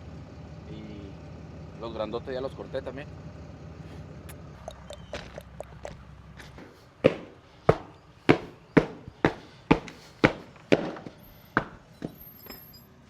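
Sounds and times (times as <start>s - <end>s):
sharp ringing knocks: 4.3s - 12.8s.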